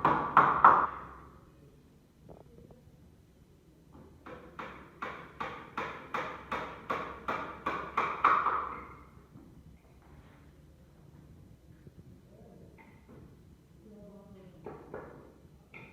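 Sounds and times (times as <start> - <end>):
hammering on wood: 0.0 - 1.2, 4.0 - 9.0.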